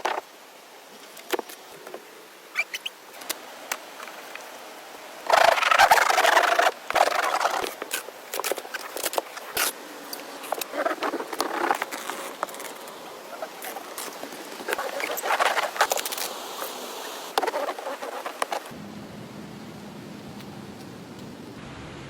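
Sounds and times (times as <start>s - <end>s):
scratchy rustling: 5.3s - 18.7s.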